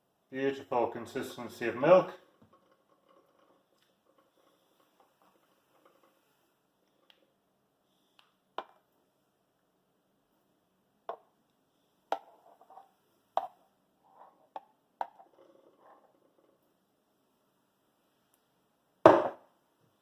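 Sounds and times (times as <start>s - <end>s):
soft clattering: 2.2s - 6.2s
cups knocking on worktop: 19.1s - 19.4s.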